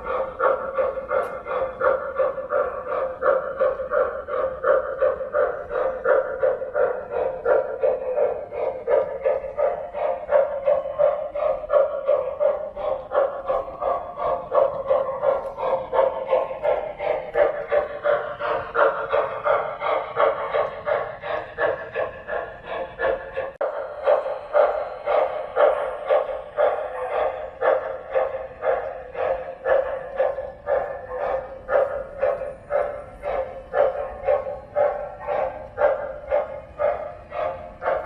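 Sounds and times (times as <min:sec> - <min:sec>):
tinny electronic steam chuffing: 0:00.0 - 0:38.0.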